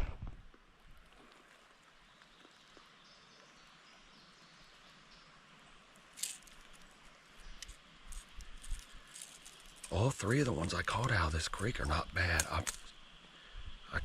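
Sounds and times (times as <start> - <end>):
faint outdoor background hiss: 0.0 - 14.0
short rustle or clatter: 6.2 - 7.0, 7.6 - 10.0.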